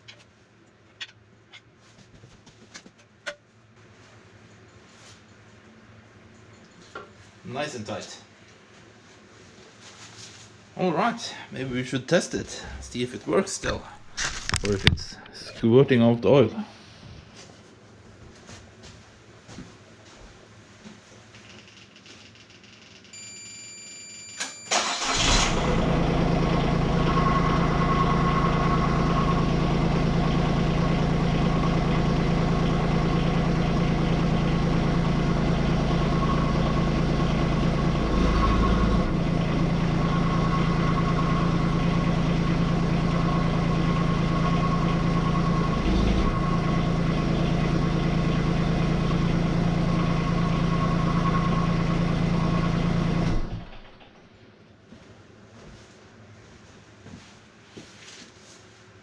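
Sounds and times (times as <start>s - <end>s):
diesel engine starting and running: 11.3s - 15.7s, 24.4s - 54.2s
warning tone: 23.2s - 24.8s, 26.8s - 30.4s, 35.3s - 48.5s.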